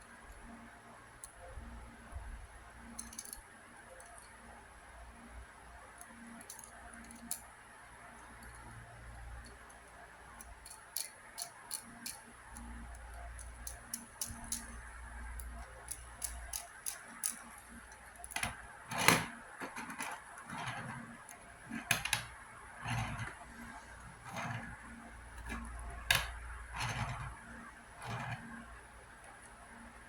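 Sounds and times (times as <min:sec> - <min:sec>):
fidget spinner clicks and taps: 0:08.5 - 0:20.8.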